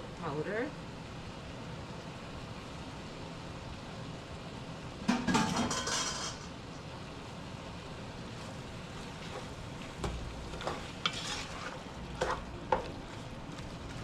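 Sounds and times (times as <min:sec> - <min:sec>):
meat sizzling in a pot: 0:00.0 - 0:14.0
spoon scraping a pot: 0:10.5 - 0:12.9.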